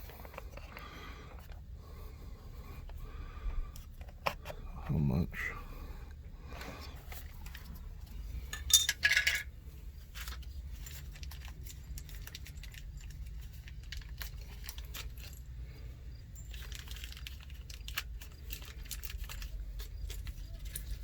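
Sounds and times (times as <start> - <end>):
low steady rumble: 0.0 - 21.0
small metal parts clattering: 8.4 - 9.5, 10.1 - 15.6, 16.2 - 21.0.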